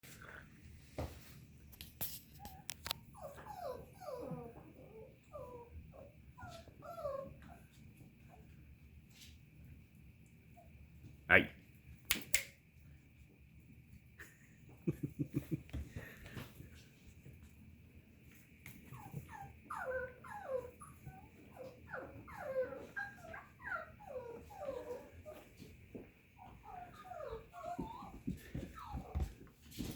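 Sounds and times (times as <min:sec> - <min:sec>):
puppies whimpering: 0:03.2 - 0:07.6, 0:18.9 - 0:25.4, 0:26.4 - 0:29.3
sharp clicks: 0:12.1 - 0:12.6.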